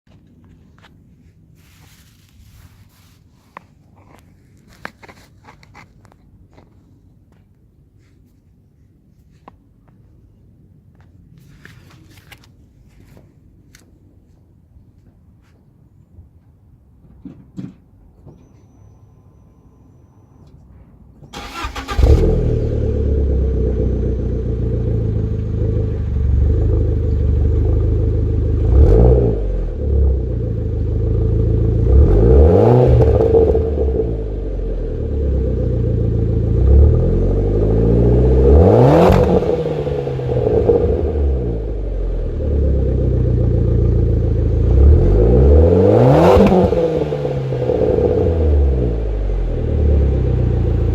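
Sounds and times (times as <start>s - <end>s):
car engine cranking: 21.3s - 24.1s
car engine idling and revving: 21.4s - 50.9s.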